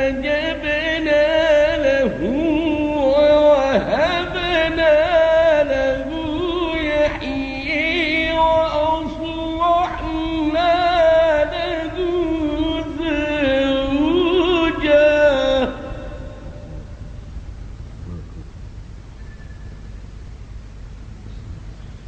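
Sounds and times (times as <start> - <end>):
person chanting recitation: 0.0 - 17.2, 18.0 - 18.5.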